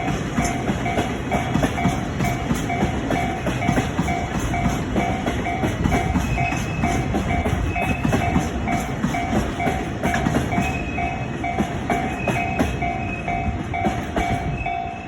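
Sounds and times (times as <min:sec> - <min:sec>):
freight train rumbling past: 0:00.0 - 0:15.0
level crossing warning bell: 0:00.0 - 0:15.0
wheels clicking over rail joints: 0:00.0 - 0:15.0.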